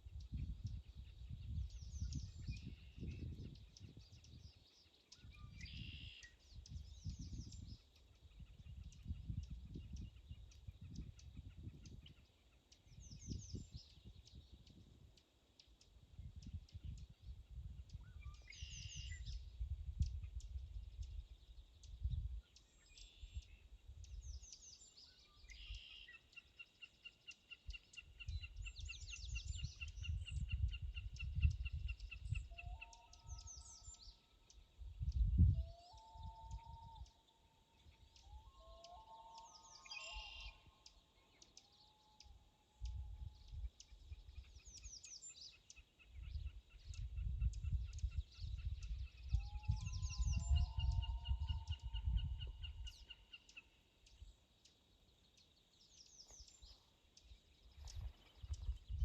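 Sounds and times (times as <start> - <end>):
wind rumble on microphone: 0.0 - 15.2, 15.8 - 24.8, 27.6 - 38.8, 42.7 - 53.3, 56.1 - 59.0
rapid pulsed bird call: 4.6 - 6.6, 22.4 - 59.0.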